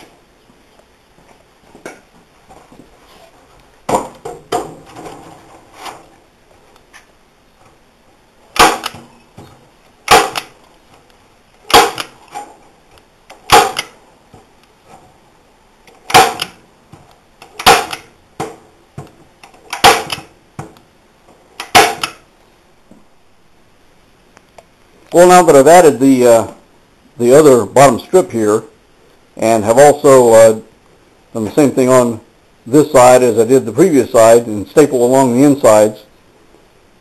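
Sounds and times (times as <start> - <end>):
staple gun snapping into wood: 8.6 - 9.0, 10.1 - 10.5, 11.7 - 12.2, 13.3 - 14.0, 16.1 - 16.6, 17.5 - 18.1, 19.7 - 20.3, 21.6 - 22.2.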